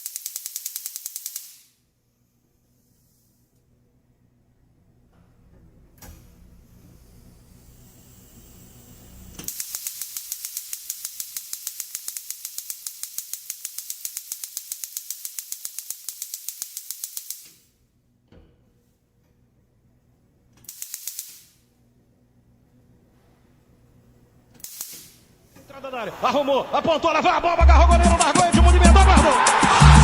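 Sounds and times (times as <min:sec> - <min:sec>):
spark igniter clicking: 0:00.0 - 0:01.7, 0:09.4 - 0:17.6, 0:20.6 - 0:21.6, 0:24.6 - 0:25.2
faint gas hiss: 0:02.0 - 0:03.7, 0:06.0 - 0:09.8.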